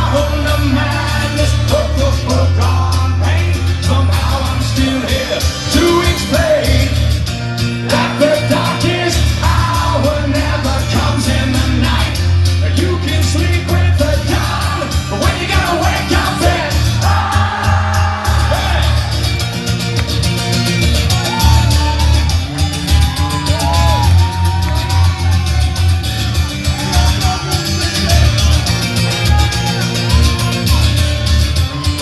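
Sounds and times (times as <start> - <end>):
heavy bass line: 0.0 - 32.0
live rock band: 0.0 - 32.0.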